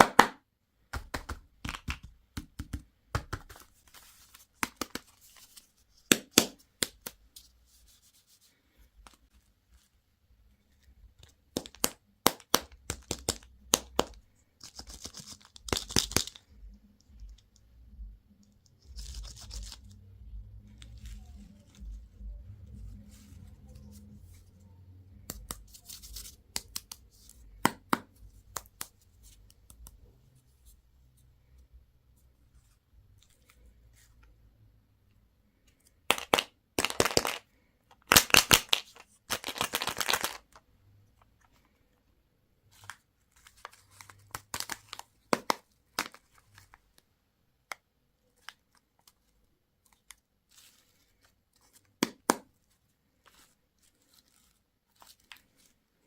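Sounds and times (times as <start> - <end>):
packaging tearing and crinkling: 38.1 - 40.4.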